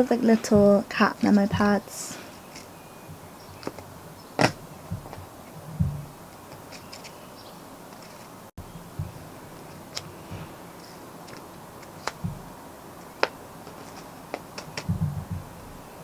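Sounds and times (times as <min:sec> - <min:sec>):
packaged stationery being handled: 0:13.2 - 0:14.9.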